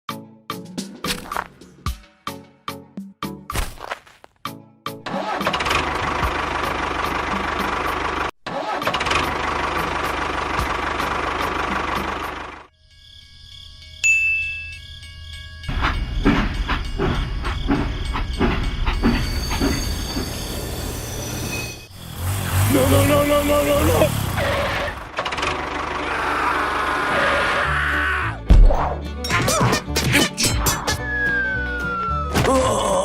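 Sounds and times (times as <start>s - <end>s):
small motors running: 20.8s - 25.1s.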